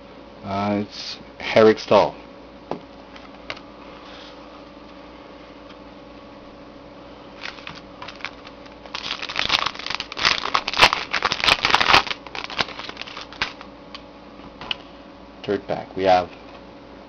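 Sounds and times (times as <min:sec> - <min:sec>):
card pack wrapper crinkling: 0:07.4 - 0:13.7.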